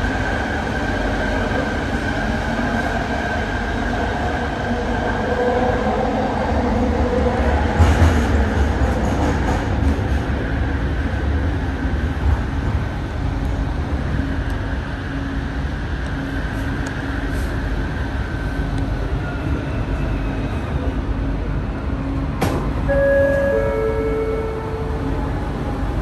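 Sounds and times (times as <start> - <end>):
train wheels rumbling on rail: 0.0 - 26.0
short steady tones: 22.9 - 26.0
whine sliding down in pitch: 22.9 - 26.0.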